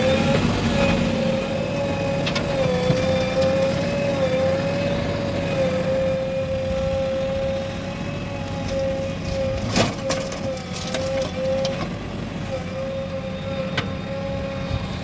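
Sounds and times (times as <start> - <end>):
high machinery whine: 0.0 - 15.0.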